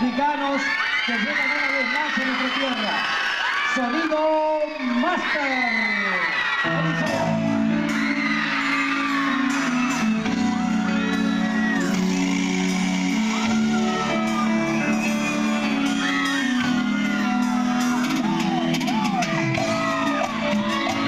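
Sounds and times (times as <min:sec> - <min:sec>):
people shouting and whooping: 0:00.0 - 0:21.0
keyboard chords: 0:06.8 - 0:21.0
cumbia band playing: 0:06.9 - 0:21.0.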